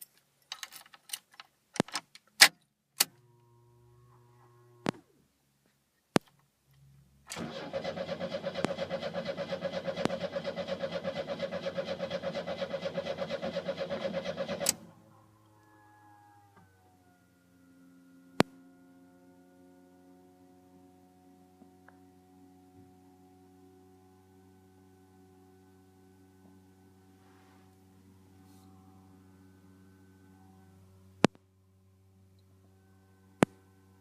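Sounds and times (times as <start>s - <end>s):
faint hum: 2.9s - 34.0s
engine cranking on starter: 7.3s - 15.0s.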